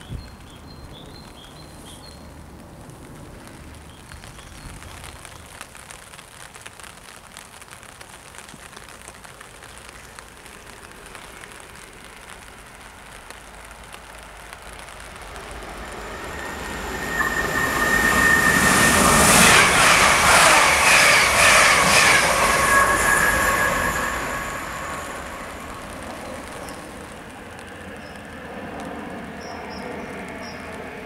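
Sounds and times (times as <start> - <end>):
train approaching: 10.6 - 28.4
high steady whine: 11.6 - 28.3.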